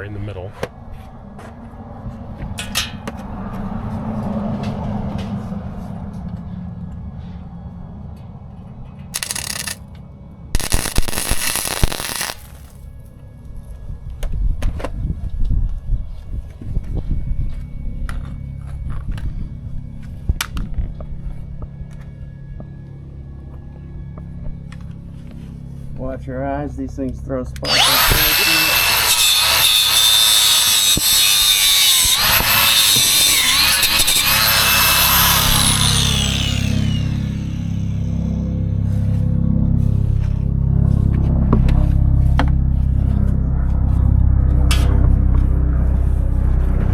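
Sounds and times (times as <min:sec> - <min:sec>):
angle grinder whining on steel: 0:09.2 - 0:09.8, 0:10.6 - 0:12.8, 0:27.6 - 0:38.6
sharp clicks: 0:09.2 - 0:09.8, 0:10.6 - 0:12.8
welding arc crackling: 0:09.2 - 0:09.8, 0:10.6 - 0:12.8, 0:27.7 - 0:37.7.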